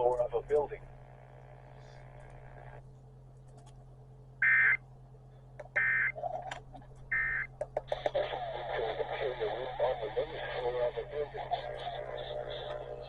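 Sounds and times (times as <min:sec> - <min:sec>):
radio speech: 0:00.0 - 0:00.8, 0:07.7 - 0:13.0
faint crackles: 0:00.0 - 0:03.8
steady low hum: 0:00.0 - 0:13.0
buzzy data bursts: 0:08.2 - 0:13.0.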